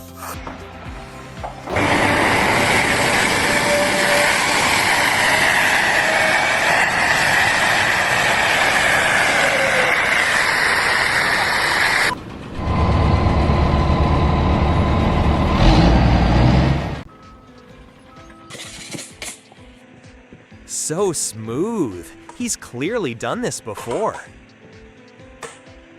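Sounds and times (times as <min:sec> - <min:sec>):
heavy engine rumbling: 0:01.6 - 0:17.1
loud steady mechanical noise: 0:01.6 - 0:17.1.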